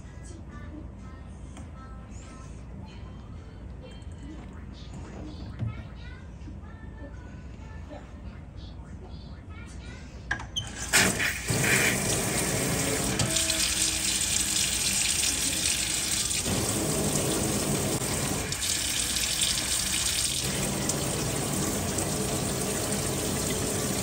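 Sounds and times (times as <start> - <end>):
running water: 10.7 - 24.0.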